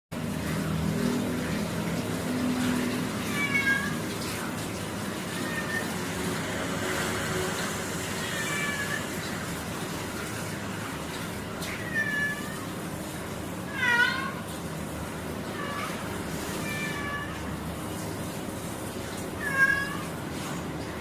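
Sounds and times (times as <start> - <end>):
cat meowing: 3.2 - 4.2, 5.3 - 6.1, 8.2 - 9.3, 11.7 - 12.8, 13.7 - 14.4, 15.5 - 17.6, 19.4 - 20.2.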